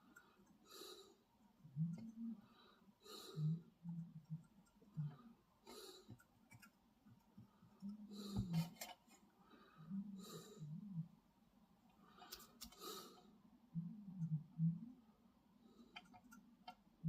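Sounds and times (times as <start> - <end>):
person breathing close to microphone: 0.0 - 3.8, 7.6 - 11.0, 12.0 - 13.3
soft low hums: 0.0 - 17.0.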